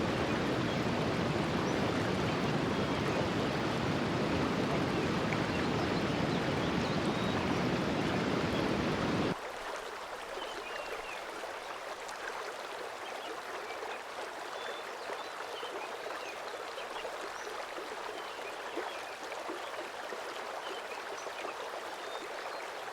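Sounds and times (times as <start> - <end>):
stream water rushing: 0.0 - 13.0.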